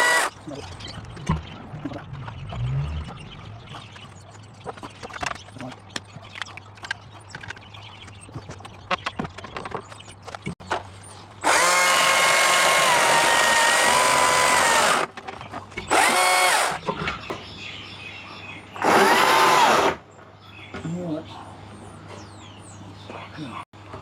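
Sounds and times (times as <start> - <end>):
power tool motor whirring: 0.0 - 0.3, 11.4 - 15.1, 15.9 - 16.8, 18.8 - 20.0.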